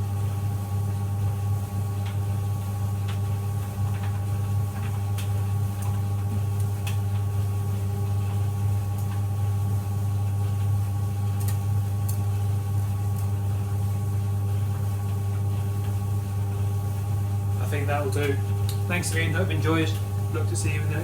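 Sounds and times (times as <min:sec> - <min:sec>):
tumble dryer humming: 0:10.4 - 0:21.0.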